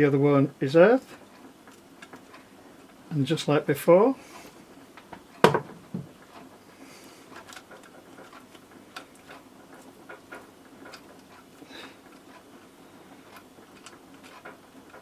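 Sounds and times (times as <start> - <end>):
tools handled on a workbench: 5.4 - 6.1.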